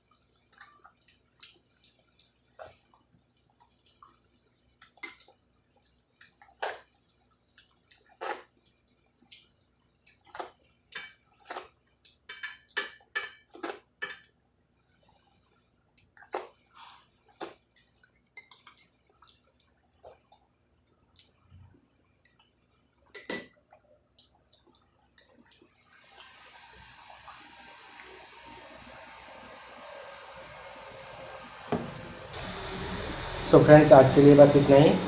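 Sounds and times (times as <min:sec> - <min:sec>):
mouth smacks and chewing: 0:00.6 - 0:02.9, 0:06.2 - 0:10.6, 0:15.9 - 0:21.6, 0:23.7 - 0:25.8.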